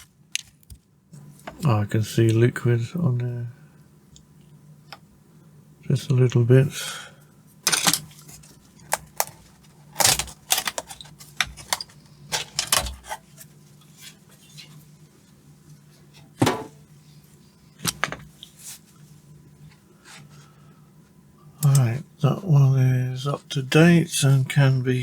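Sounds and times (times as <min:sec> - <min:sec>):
faint low hum: 0:00.0 - 0:25.0
small parts clicking and knocking: 0:07.6 - 0:09.4, 0:10.0 - 0:13.2.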